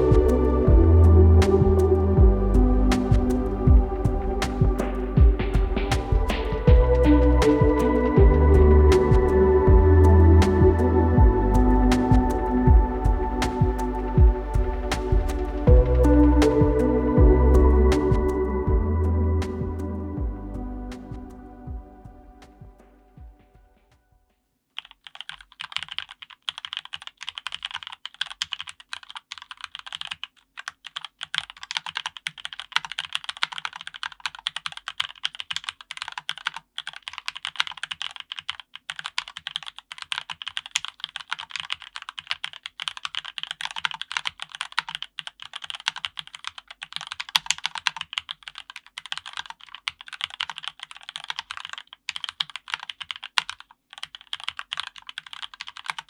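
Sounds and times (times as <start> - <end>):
fast mechanical keyboard typing: 24.8 - 56.0.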